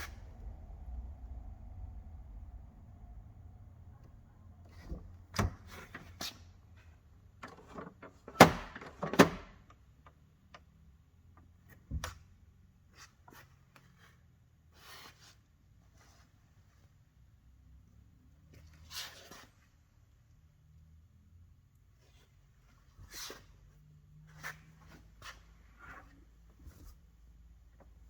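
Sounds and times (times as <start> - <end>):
knocks and clunks of car parts: 7.4 - 9.8.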